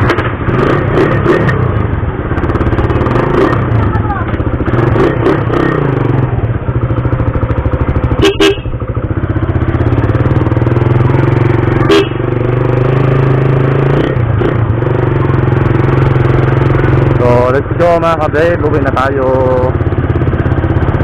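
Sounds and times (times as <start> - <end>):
motorcycle engine running: 0.0 - 21.0
horn beeps: 8.1 - 8.8, 11.8 - 12.3.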